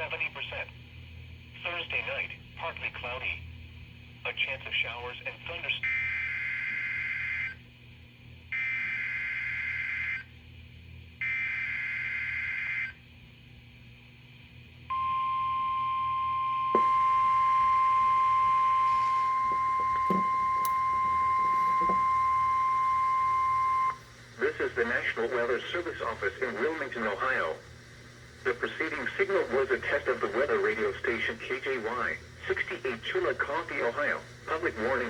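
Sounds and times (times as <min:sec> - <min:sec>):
steady warning alarm tone: 0:05.8 - 0:07.6, 0:08.5 - 0:10.3, 0:11.2 - 0:13.0, 0:14.9 - 0:27.5
higher alarm tone: 0:14.9 - 0:24.0.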